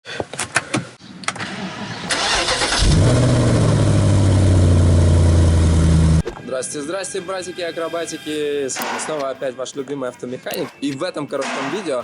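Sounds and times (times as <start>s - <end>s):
car engine cranking and running: 2.1s - 6.2s.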